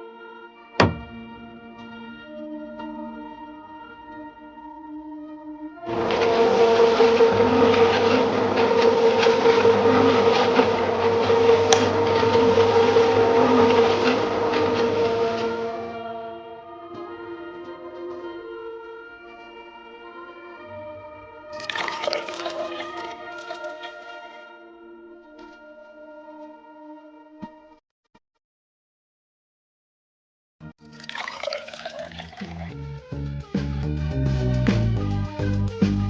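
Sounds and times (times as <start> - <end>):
music with held notes: 0.0 - 27.4, 32.8 - 36.0
sudden loud noisy sound: 0.8 - 1.5, 5.9 - 16.6
small motor whining and rattling: 5.9 - 16.1.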